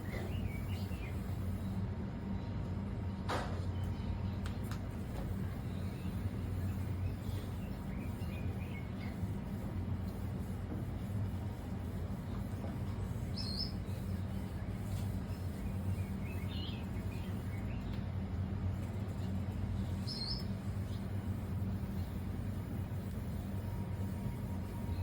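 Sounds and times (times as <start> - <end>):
steady low hum: 0.0 - 25.0
lower bird chirps: 13.2 - 14.4, 20.0 - 21.0.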